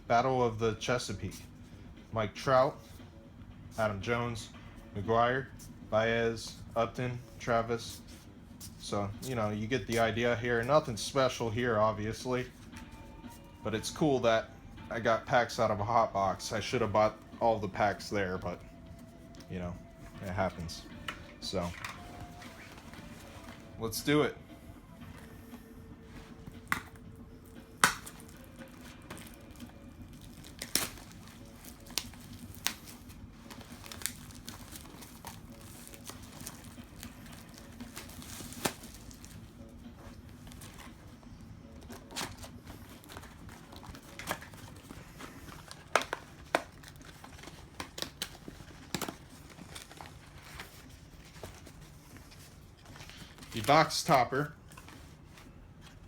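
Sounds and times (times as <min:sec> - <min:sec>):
plastic shrink wrap crinkling: 0:27.8 - 0:39.5, 0:41.8 - 0:55.2.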